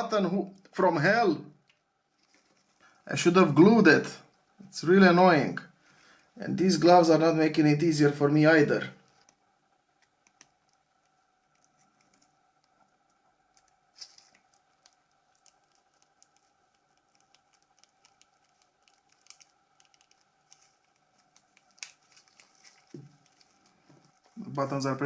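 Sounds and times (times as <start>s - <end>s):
faint room hum: 0.0s - 25.0s
plastic handling noises: 8.9s - 25.0s.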